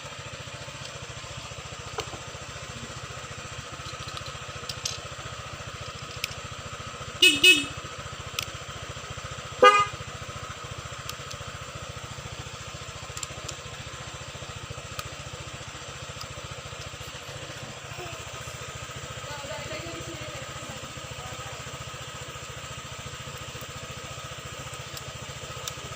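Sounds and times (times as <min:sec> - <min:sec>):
scooter engine idling: 0:00.0 - 0:25.9
horn-like siren blast: 0:09.6 - 0:10.0.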